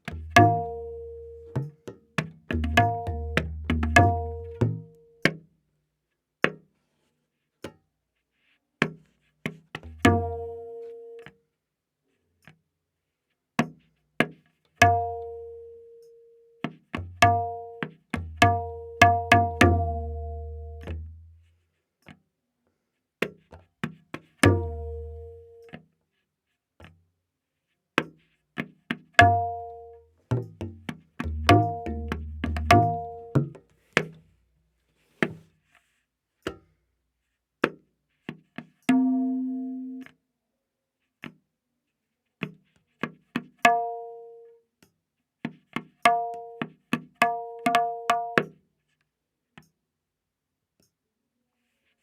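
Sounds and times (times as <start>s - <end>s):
tabla ringing strokes: 0.0s - 5.4s, 9.8s - 11.3s, 14.8s - 21.6s, 24.4s - 25.8s, 29.2s - 34.1s, 38.8s - 40.1s.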